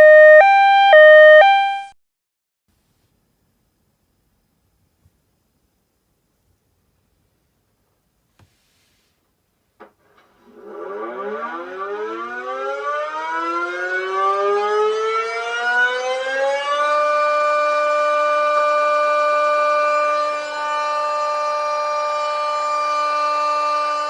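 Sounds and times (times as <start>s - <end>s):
siren winding up: 0.0s - 1.9s, 10.4s - 24.0s.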